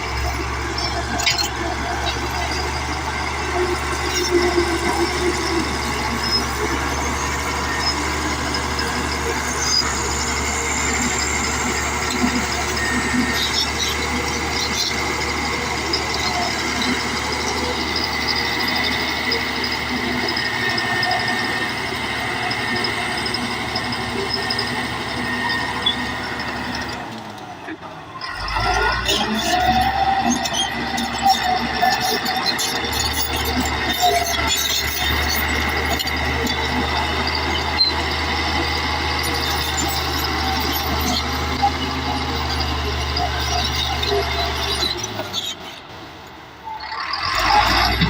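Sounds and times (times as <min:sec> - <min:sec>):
high-pitched whine: 0:00.0 - 0:26.9
diesel engine running: 0:00.0 - 0:48.0.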